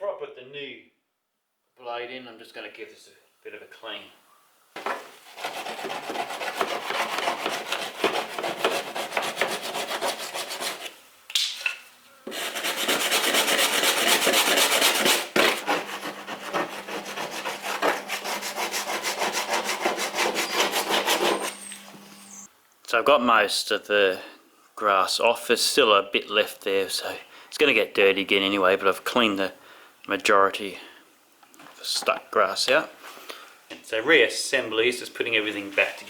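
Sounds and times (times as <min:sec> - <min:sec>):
scraping grass off mower deck: 0:12.3 - 0:22.5.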